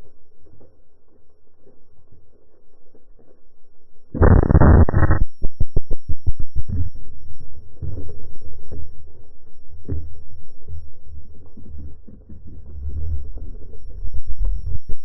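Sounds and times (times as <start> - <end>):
low throbbing pulses: 4.2 - 15.0.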